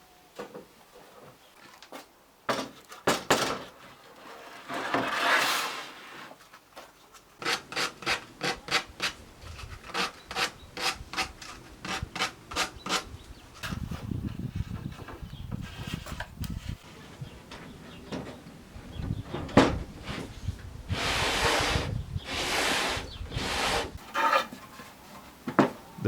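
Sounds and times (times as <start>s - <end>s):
long scrape: 4.4s - 6.4s, 20.9s - 24.5s
sanding wood by hand: 20.9s - 24.0s.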